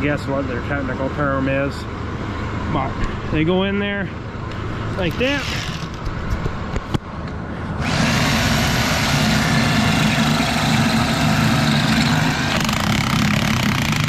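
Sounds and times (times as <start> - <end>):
hammer drill boring into concrete: 5.0 - 6.0, 7.8 - 14.0.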